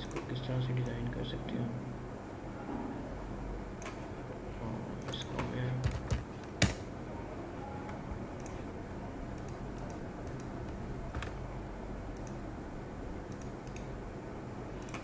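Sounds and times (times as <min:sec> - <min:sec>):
low electrical hum and hiss: 0:00.0 - 0:15.0
computer mouse clicks: 0:03.8 - 0:04.0, 0:08.4 - 0:08.6, 0:09.4 - 0:11.4, 0:12.1 - 0:12.4, 0:13.3 - 0:13.9, 0:14.8 - 0:15.0.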